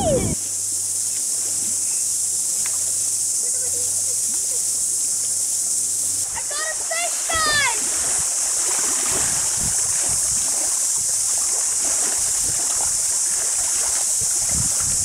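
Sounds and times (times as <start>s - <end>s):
wind buffeting microphone: 0.0s - 0.4s, 6.3s - 15.0s
insect chorus hissing: 0.0s - 15.0s.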